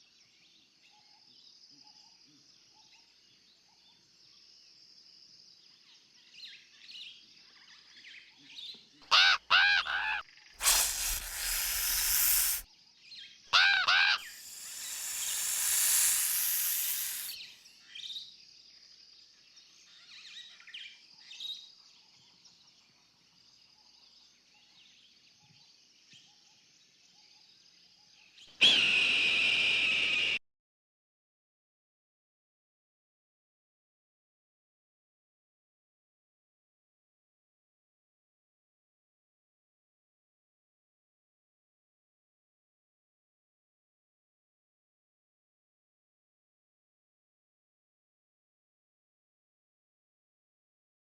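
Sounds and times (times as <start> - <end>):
loud pitched sweeping calls: 10.6 - 12.6, 14.1 - 17.4
loud rushing noise bursts: 14.3 - 17.4.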